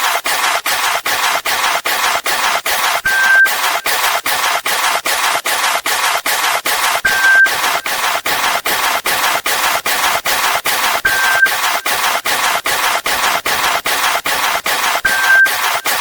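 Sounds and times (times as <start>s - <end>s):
high steady beep: 3.1s - 4.0s, 7.0s - 8.0s, 11.0s - 12.0s, 15.0s - 16.0s.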